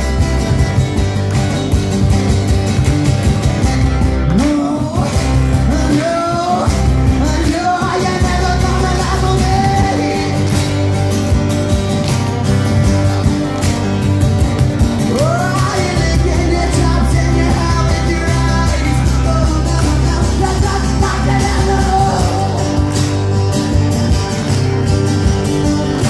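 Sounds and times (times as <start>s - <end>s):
low bass line: 0.0s - 26.0s
strummed acoustic guitars: 0.0s - 26.0s
person singing lead vocal: 4.3s - 11.1s, 15.0s - 23.2s.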